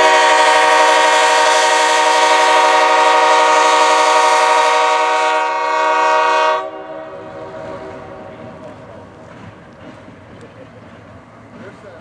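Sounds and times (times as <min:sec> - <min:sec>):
railroad air horn chord: 0:00.0 - 0:08.4.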